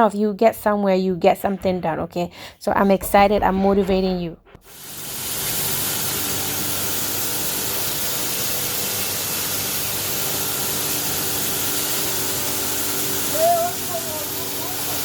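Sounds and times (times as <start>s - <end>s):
feed mill machine rushing: 4.6s - 15.0s.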